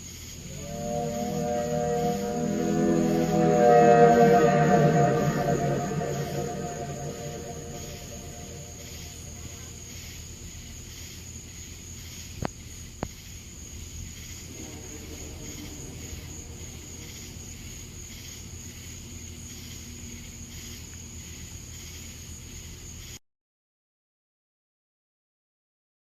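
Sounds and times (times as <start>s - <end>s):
crickets and insects trilling: 0.0s - 23.2s
faint low pitched sound: 0.5s - 9.7s, 14.5s - 17.4s.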